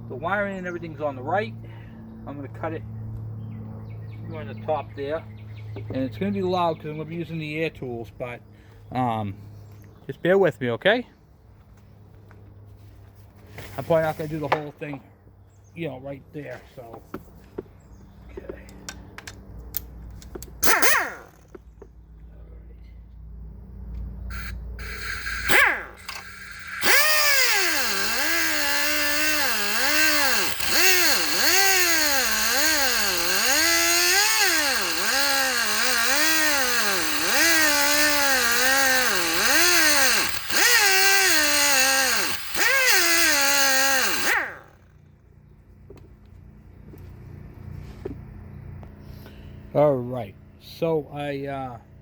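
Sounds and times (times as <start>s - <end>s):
pneumatic grinder cutting metal: 20.6s - 21.6s, 24.3s - 45.0s.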